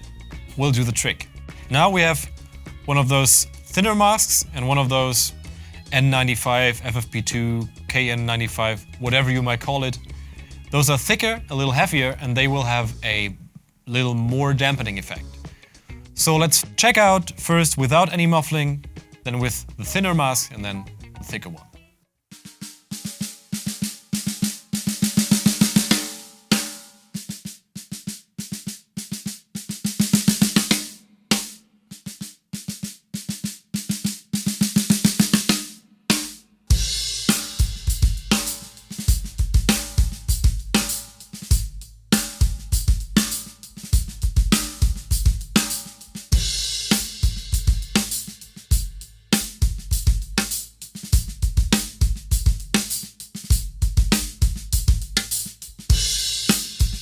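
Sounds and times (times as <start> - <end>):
snare drum strokes and rolls: 0.0 - 5.3, 49.4 - 57.0
drum kit groove: 0.0 - 57.0.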